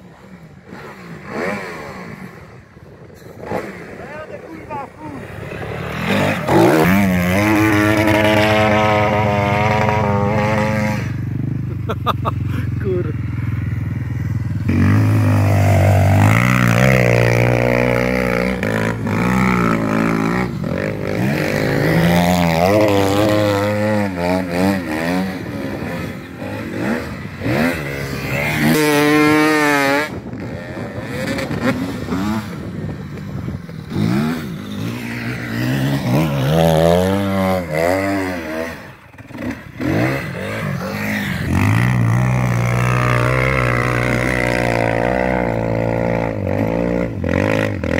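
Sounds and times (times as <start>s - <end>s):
off-road vehicle engine revving: 0.0s - 47.9s.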